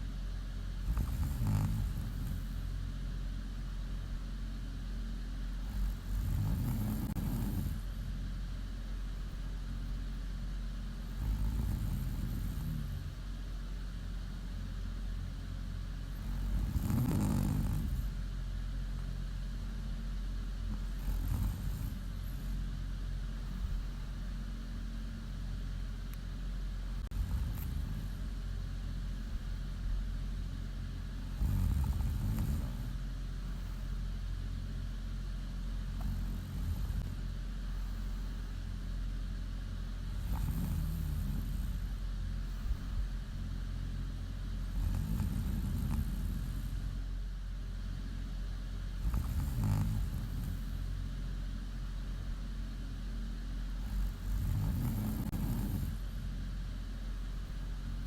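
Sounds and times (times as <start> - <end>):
steady low hum: 0.0 - 58.0
woman snoring: 0.8 - 2.7, 5.6 - 8.1, 11.0 - 13.2, 16.1 - 18.2, 20.7 - 22.6, 27.0 - 28.3, 31.2 - 33.0, 35.9 - 37.2, 40.1 - 42.0, 44.6 - 47.0, 49.0 - 50.9, 53.8 - 56.3.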